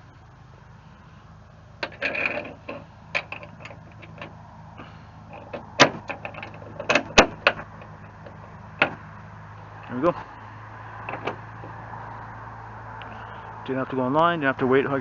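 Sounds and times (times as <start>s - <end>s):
metal latch clicks and knocks: 1.8s - 4.4s, 5.3s - 9.0s, 11.0s - 11.8s.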